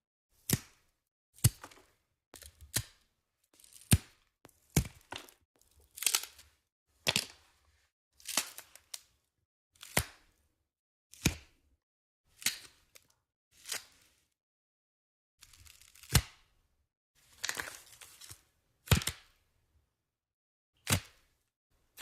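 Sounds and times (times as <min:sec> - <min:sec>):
sharp cracks and snaps: 0:08.2 - 0:09.1, 0:12.4 - 0:13.1.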